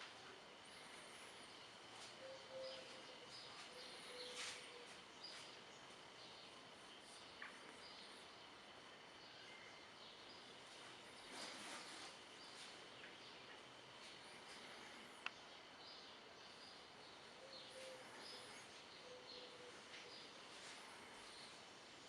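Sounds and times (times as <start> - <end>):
bird chirps: 2.1 - 8.3, 15.8 - 20.4.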